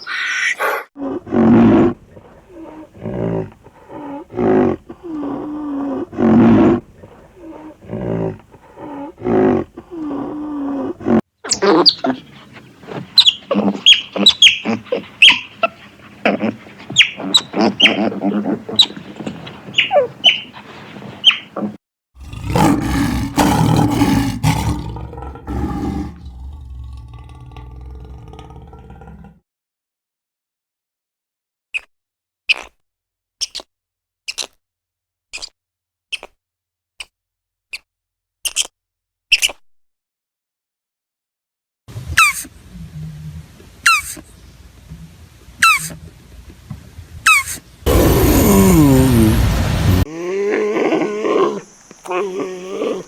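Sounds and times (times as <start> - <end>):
quick sharp squeaking calls: 13.2 - 18.1, 18.7 - 20.5, 21.2 - 21.5
noisy animal call burst: 41.9 - 44.3, 45.6 - 46.0, 47.2 - 53.0
short pitched animal calls: 42.0 - 44.3, 45.6 - 46.0.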